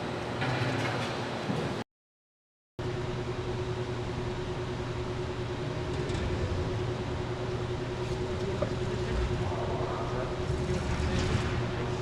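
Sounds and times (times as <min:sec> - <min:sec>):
machine running rumble: 0:02.8 - 0:12.0.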